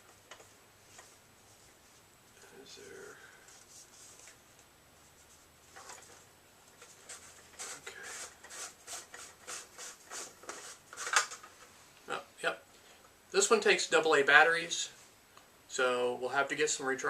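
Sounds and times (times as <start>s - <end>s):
hands scraping plastic lantern: 6.8s - 11.4s.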